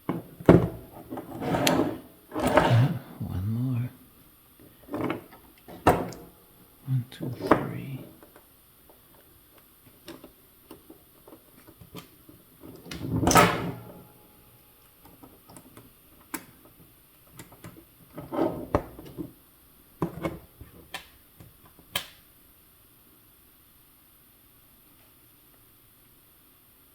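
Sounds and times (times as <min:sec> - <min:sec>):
rustling scrape: 0:01.0 - 0:03.1.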